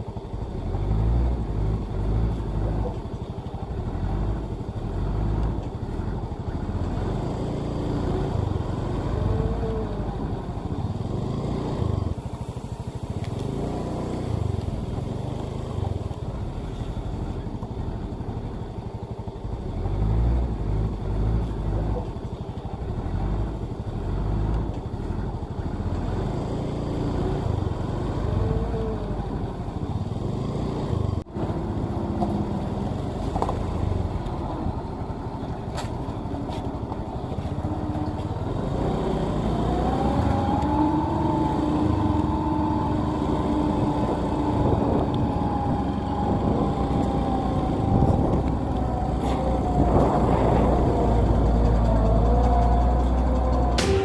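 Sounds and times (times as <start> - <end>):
vehicle engine and road noise: 0.0 - 54.0
steady high tone: 53.8 - 54.0.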